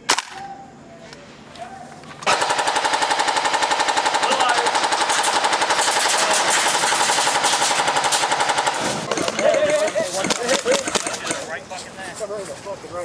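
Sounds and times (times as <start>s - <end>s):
airsoft gun full-auto burst: 2.2s - 11.6s.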